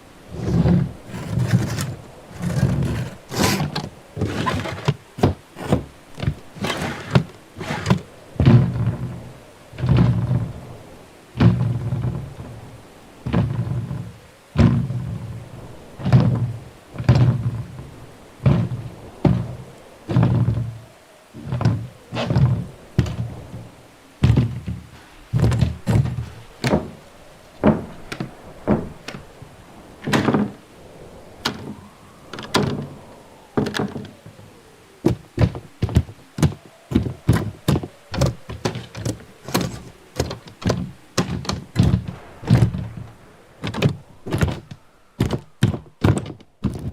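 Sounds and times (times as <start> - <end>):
sharp knocks and bangs: 27.6 - 29.2.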